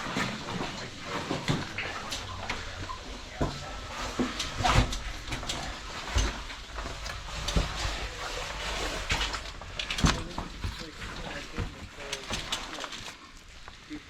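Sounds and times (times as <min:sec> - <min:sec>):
knocks clicks and scrapes of gear: 0:00.0 - 0:13.9.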